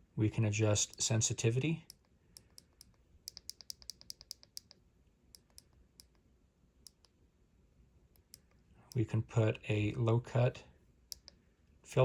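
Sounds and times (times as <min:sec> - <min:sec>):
small buttons clicking: 0:01.9 - 0:06.2, 0:06.8 - 0:07.2, 0:11.1 - 0:11.4.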